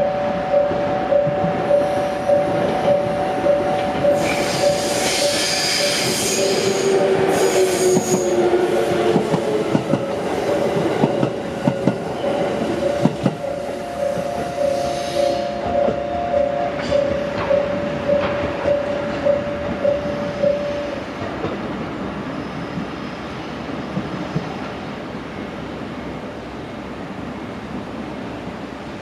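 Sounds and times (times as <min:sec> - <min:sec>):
level crossing warning bell: 0:00.0 - 0:05.0, 0:11.7 - 0:21.0.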